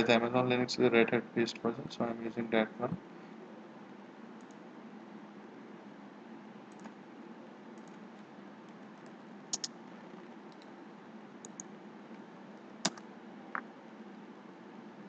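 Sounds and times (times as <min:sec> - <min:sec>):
microphone hiss: 0:00.0 - 0:15.0
keyboard and mouse clicks: 0:06.7 - 0:07.0, 0:07.7 - 0:08.0, 0:09.0 - 0:09.8, 0:11.4 - 0:11.7, 0:12.8 - 0:13.6.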